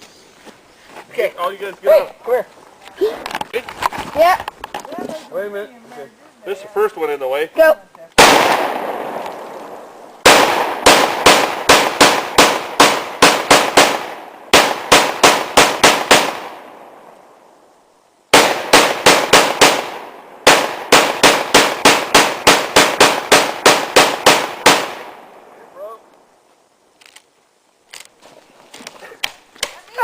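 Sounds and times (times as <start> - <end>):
rapid gunfire echoing: 8.2 - 9.2, 10.2 - 16.7, 18.3 - 25.2.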